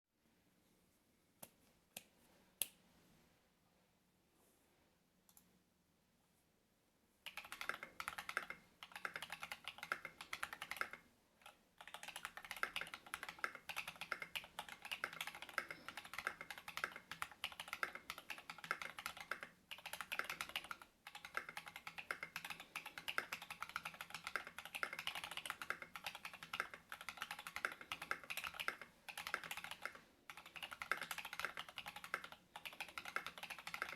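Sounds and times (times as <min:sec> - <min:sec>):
typing on mechanical keyboard: 0:07.2 - 0:33.9.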